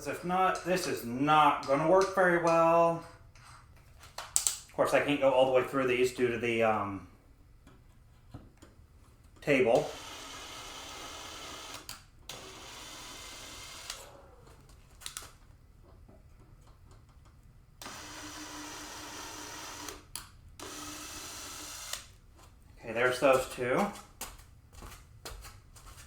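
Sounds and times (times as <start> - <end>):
electric drill running: 9.8 - 14.2, 17.8 - 22.1.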